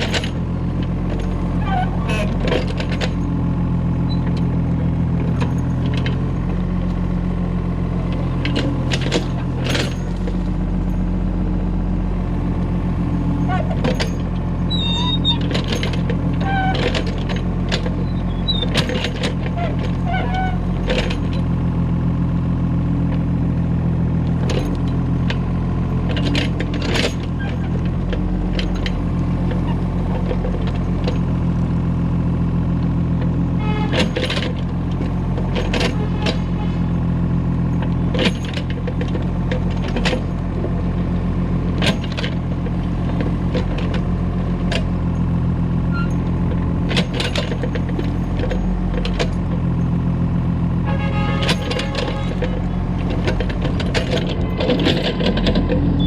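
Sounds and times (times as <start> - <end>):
excavator engine running: 0.0 - 56.0
metallic clanks and knocks: 13.5 - 21.5, 33.6 - 36.8, 37.7 - 40.4, 46.0 - 49.9, 50.9 - 56.0.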